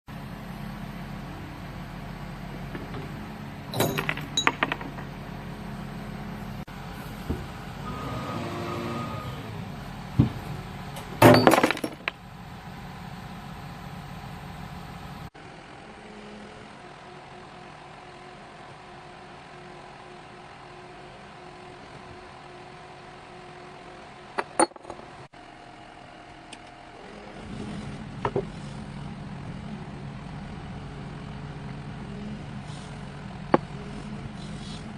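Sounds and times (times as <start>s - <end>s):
excavator engine running: 0.1s - 34.9s
glass bottles clinking: 3.8s - 5.0s, 11.2s - 12.1s.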